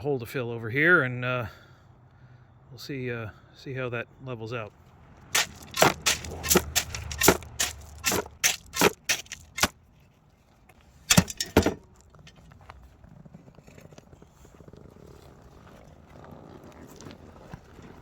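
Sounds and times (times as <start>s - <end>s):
steel tool scraping gravel: 5.3s - 9.8s, 11.0s - 12.4s.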